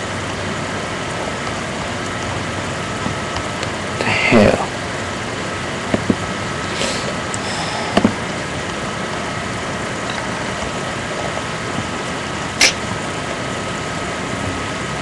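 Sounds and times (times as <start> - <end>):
background hiss and hum: 0.0 - 15.0.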